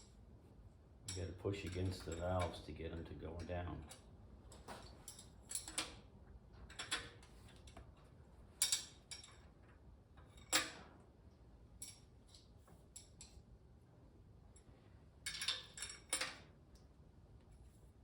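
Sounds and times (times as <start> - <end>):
metal rods and tools clinking: 1.1 - 2.6, 3.4 - 6.0, 8.6 - 9.5, 15.3 - 16.5.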